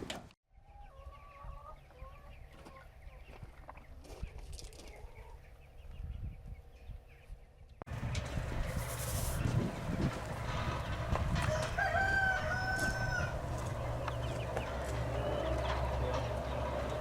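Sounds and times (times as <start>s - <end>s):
low background rumble: 5.5s - 17.0s
rooster crowing: 11.4s - 13.6s.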